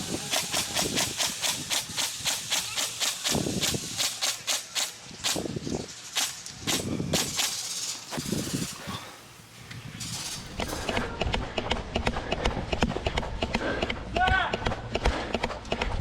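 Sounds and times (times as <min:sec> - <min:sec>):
gear rattling: 0:00.3 - 0:09.3, 0:10.0 - 0:11.0.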